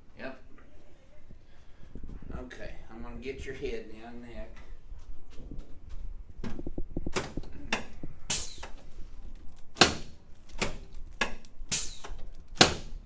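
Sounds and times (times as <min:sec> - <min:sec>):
heavy thumps: 0:05.4 - 0:13.0.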